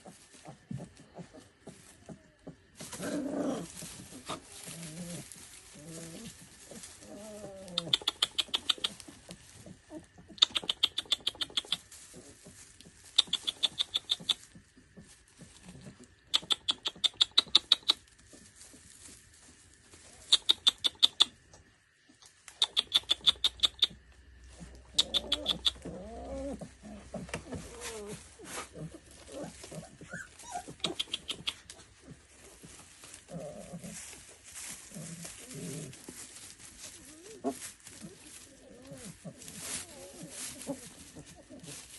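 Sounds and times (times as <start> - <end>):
puppies whimpering: 25.0 - 31.7.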